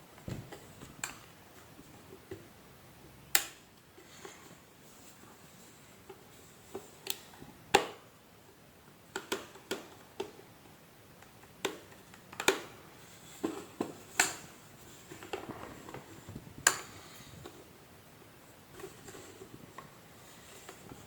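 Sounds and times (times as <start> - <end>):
plastic vacuum parts clicking: 9.1 - 10.4, 11.2 - 12.7.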